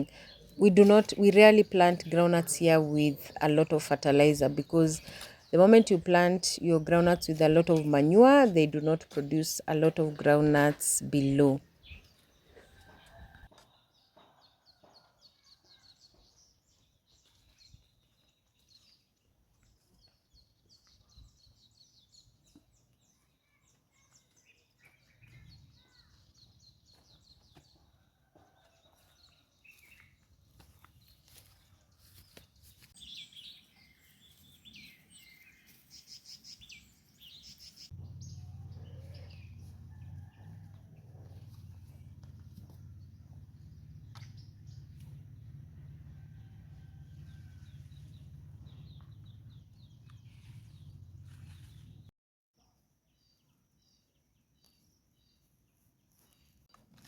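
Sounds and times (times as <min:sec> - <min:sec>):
small birds chirping: 0:00.0 - 0:52.1
low steady rumble: 0:38.0 - 0:52.1.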